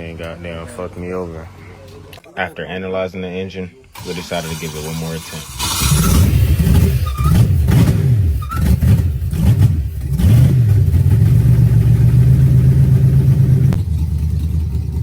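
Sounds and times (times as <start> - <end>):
car engine revving and idling: 5.4 - 15.0.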